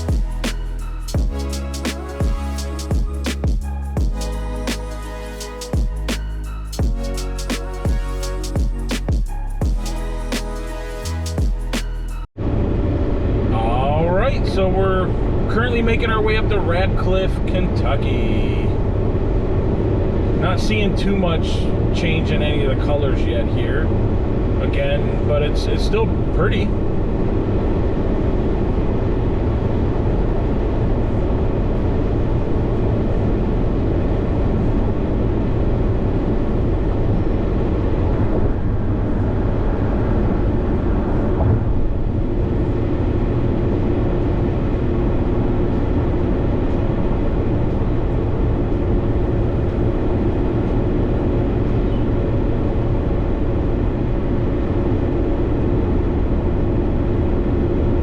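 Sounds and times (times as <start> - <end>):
road and engine noise inside car: 24.0 - 58.0.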